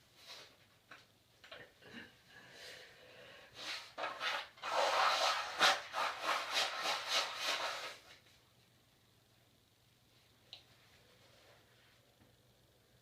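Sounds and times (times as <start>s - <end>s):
nose being wiped with tissue: 3.6s - 8.0s.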